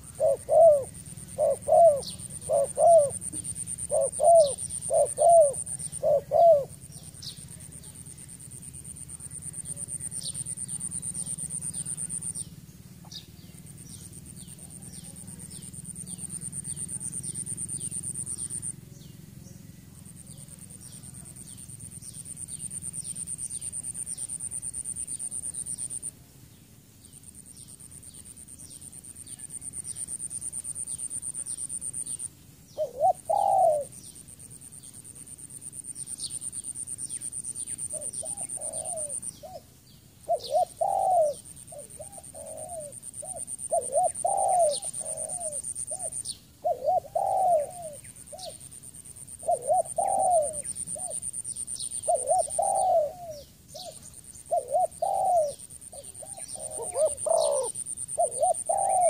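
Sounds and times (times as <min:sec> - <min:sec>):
dove cooing: 0:00.0 - 0:08.0, 0:29.4 - 0:34.0, 0:37.6 - 0:48.6, 0:49.3 - 0:59.0
small birds chirping: 0:00.0 - 0:59.0.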